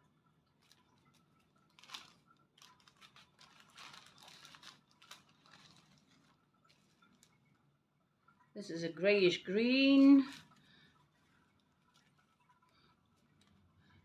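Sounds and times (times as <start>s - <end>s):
plastic baggies crinkling: 0.5s - 7.7s, 9.4s - 13.8s.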